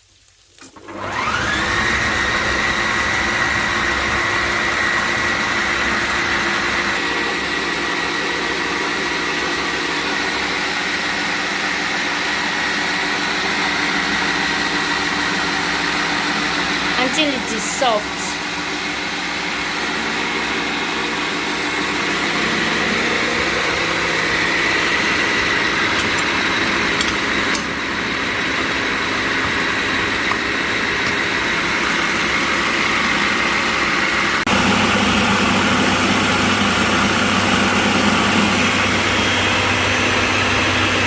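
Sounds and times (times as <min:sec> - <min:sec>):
food processor motor blending: 0:00.6 - 0:41.0.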